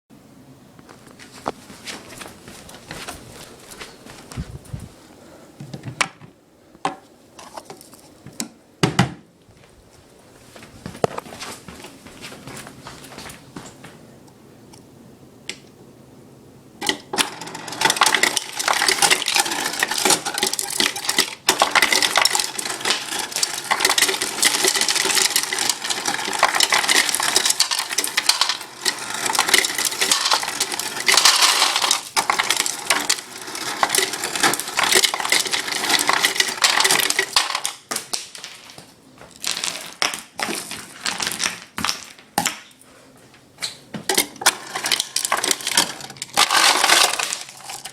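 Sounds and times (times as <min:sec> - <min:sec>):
ice cubes clattering into container: 0:16.8 - 0:38.8, 0:39.4 - 0:42.1, 0:44.1 - 0:47.9.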